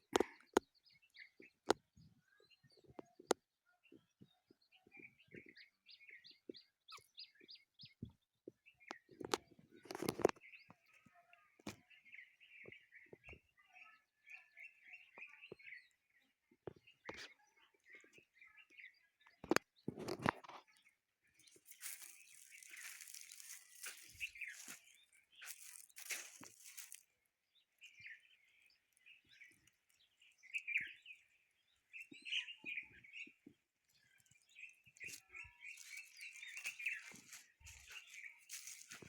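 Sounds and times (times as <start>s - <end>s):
small birds twittering: 0.0s - 39.0s
rustling noise: 21.7s - 27.0s, 35.1s - 39.0s.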